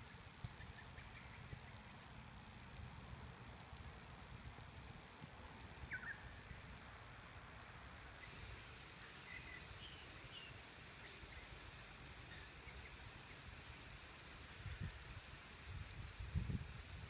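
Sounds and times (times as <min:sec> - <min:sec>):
faint bird chirps: 0:00.0 - 0:02.6, 0:05.7 - 0:11.6, 0:12.2 - 0:15.1.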